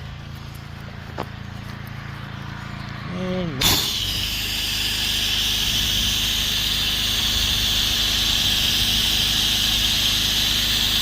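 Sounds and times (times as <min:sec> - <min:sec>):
gas engine running: 0:00.0 - 0:11.0
pressure washer jet hissing: 0:03.6 - 0:11.0.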